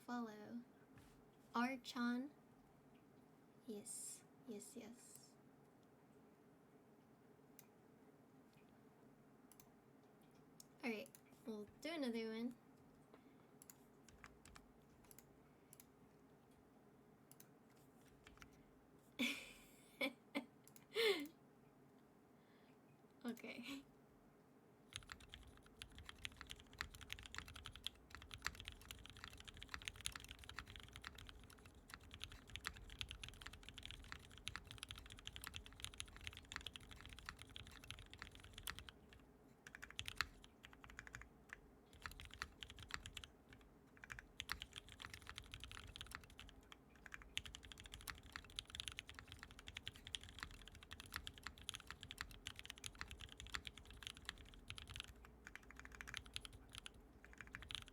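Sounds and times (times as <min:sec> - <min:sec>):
fast typing on mechanical keyboard: 0:14.1 - 0:15.2, 0:18.2 - 0:18.5, 0:24.9 - 0:57.9.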